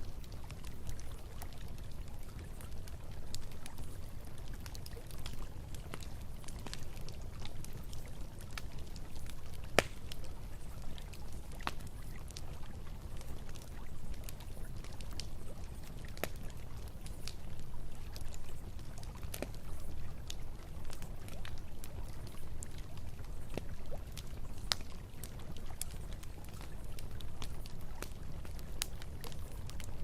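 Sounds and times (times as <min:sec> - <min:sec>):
campfire crackling: 0:00.0 - 0:30.0
burning wood popping: 0:08.0 - 0:10.3.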